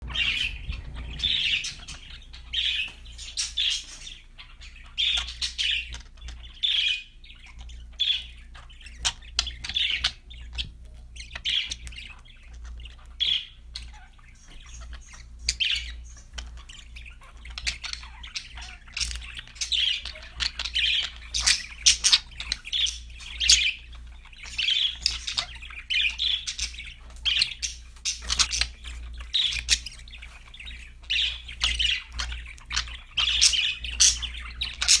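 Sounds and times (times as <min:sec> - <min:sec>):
budgerigars chattering and chirping: 0:00.0 - 0:35.0
steady low hum: 0:00.0 - 0:35.0.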